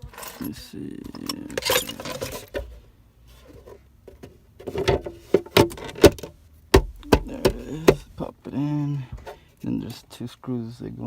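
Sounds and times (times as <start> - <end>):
plastic rustle and scrape: 1.2 - 6.3
plastic knocks and clicks: 4.1 - 8.1.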